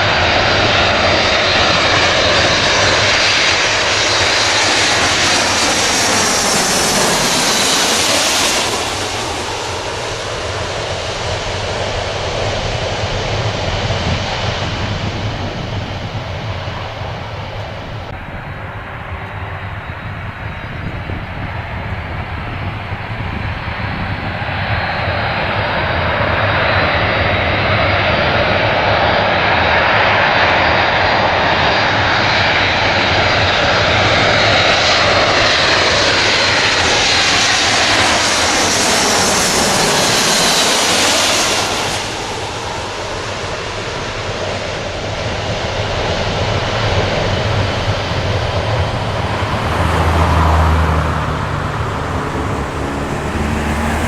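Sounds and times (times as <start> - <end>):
jet aircraft passing: 0.0 - 54.0
deep rumble: 0.3 - 24.7, 46.7 - 54.0.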